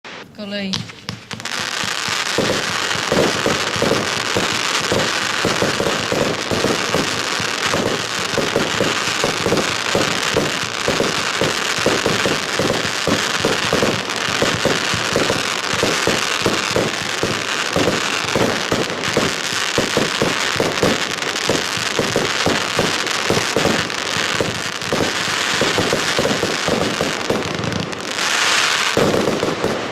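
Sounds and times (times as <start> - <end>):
fireworks crackling and bursting: 0.0 - 29.9
fireworks shots thumping: 0.0 - 29.9.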